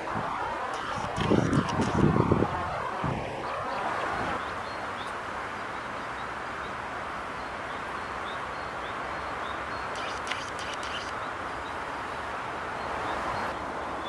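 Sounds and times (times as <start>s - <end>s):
steady rushing background: 0.0s - 4.4s, 10.0s - 11.3s
sharp clicking bird calls: 0.7s - 2.2s, 9.7s - 11.8s
small bird chirping: 9.8s - 11.3s.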